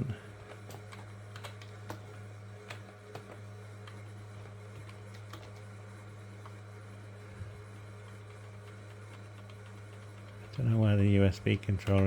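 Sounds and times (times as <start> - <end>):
computer fan humming: 0.0 - 12.0
keyboard keys clicking: 0.5 - 2.1, 11.5 - 12.0.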